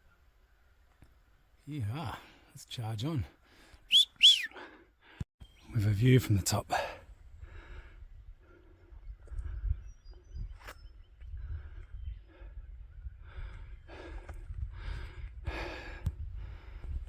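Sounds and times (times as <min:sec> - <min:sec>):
person breathing hard: 0:06.9 - 0:09.0, 0:13.2 - 0:17.0
wind rumble on microphone: 0:07.1 - 0:17.0.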